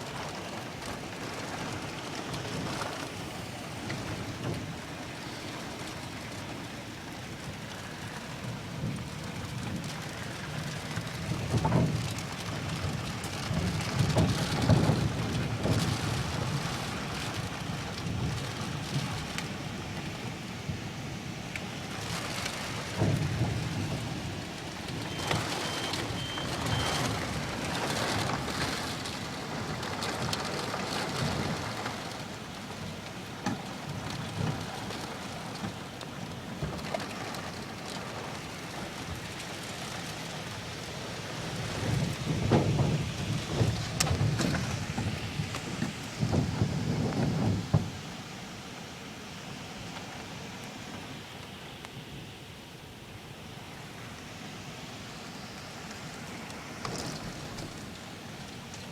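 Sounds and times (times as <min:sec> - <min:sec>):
steady rain: 0:00.0 - 0:58.9
thunder rumbles: 0:08.4 - 0:19.8, 0:22.0 - 0:32.8, 0:41.4 - 0:48.1.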